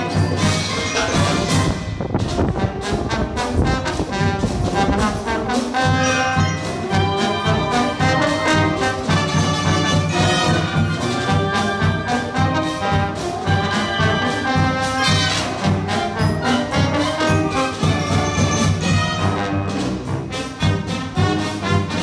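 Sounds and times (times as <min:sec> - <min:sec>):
brass band playing: 0:00.0 - 0:22.0
wind rumbling on microphone: 0:01.2 - 0:05.6.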